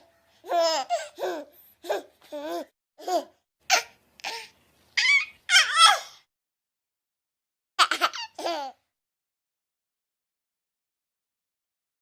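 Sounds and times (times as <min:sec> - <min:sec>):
baby girl laughing: 0:00.0 - 0:06.1, 0:07.8 - 0:08.8.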